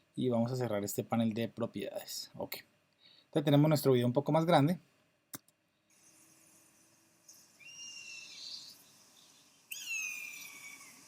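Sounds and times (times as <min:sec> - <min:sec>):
eagle screeching cries: 0:07.6 - 0:08.8, 0:09.7 - 0:11.0.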